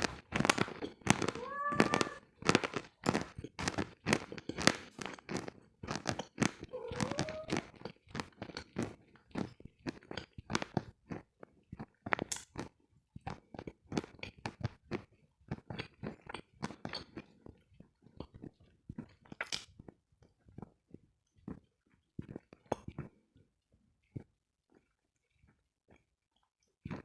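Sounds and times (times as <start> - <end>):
crunchy food being chewed: 0.0 - 12.7, 13.3 - 18.4.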